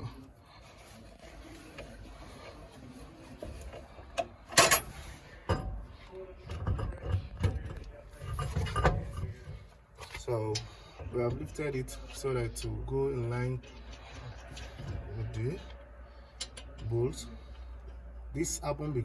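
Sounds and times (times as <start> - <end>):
car jack thuds and clunks: 4.2 - 9.7.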